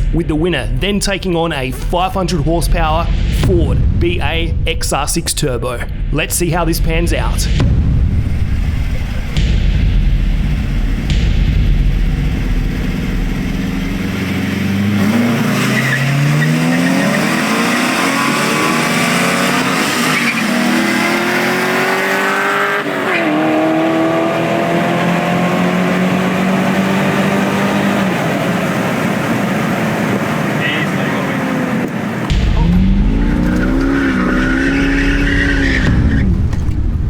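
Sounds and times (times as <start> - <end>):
car engine accelerating hard: 7.6 - 37.0.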